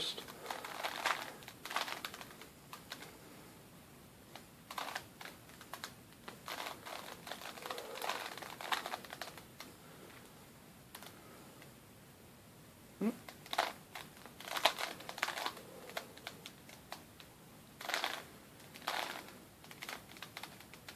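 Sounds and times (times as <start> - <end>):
puzzle cube clicking and clacking: 0.2 - 3.1, 4.3 - 9.7, 13.2 - 20.9.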